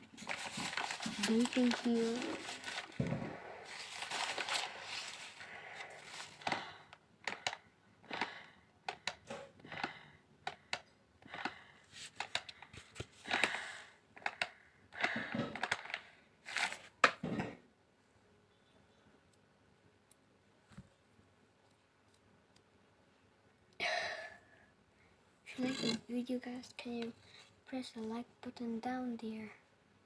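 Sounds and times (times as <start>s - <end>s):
paper bag crinkling: 0.0s - 6.5s
person breathing: 0.3s - 16.4s, 23.8s - 25.2s.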